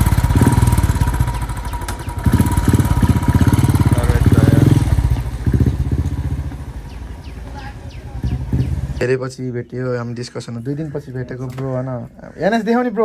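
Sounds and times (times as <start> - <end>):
motorcycle engine revving: 0.0 - 9.0.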